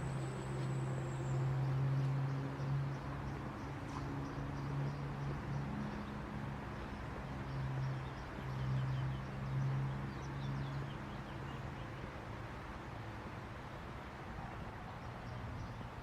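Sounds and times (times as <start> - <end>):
city traffic hum: 0.0 - 16.0.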